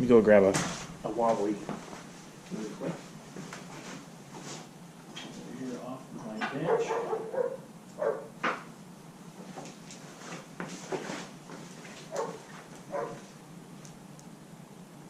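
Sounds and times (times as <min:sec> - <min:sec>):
dogs barking: 0:06.5 - 0:08.4, 0:12.0 - 0:13.3.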